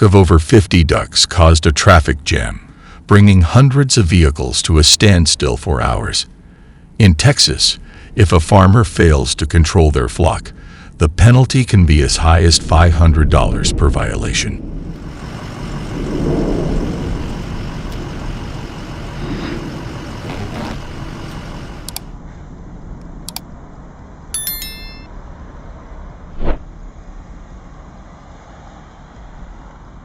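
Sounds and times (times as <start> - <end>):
road vehicle rumble: 14.6 - 23.7
high-pitched tone: 24.4 - 25.2.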